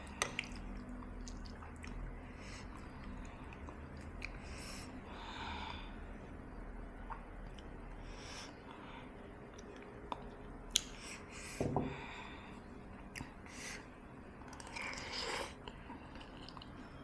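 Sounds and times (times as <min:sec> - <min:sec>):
person chewing: 0:00.1 - 0:02.0, 0:14.4 - 0:17.0.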